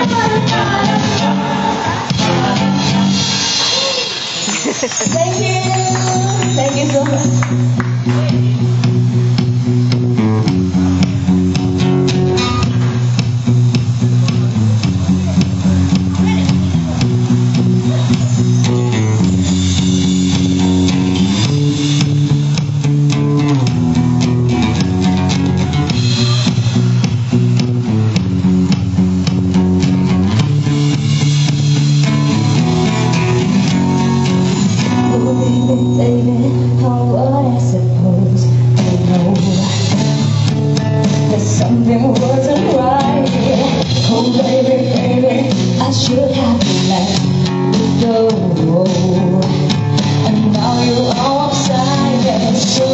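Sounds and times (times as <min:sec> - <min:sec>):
lead melody: 0:00.0 - 0:38.8
bass guitar: 0:00.0 - 0:52.9
guitar: 0:00.0 - 0:52.9.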